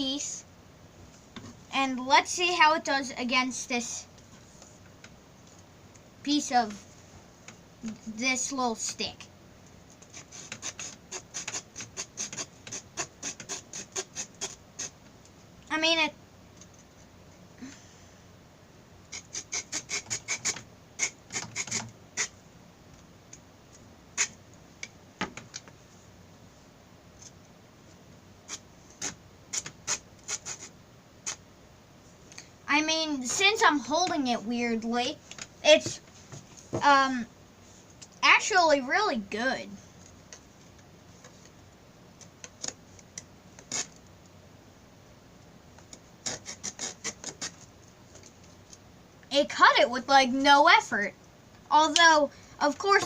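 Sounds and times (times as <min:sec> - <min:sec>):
small saw cutting through stick: 0:10.1 - 0:14.9, 0:19.1 - 0:22.3, 0:46.2 - 0:47.6.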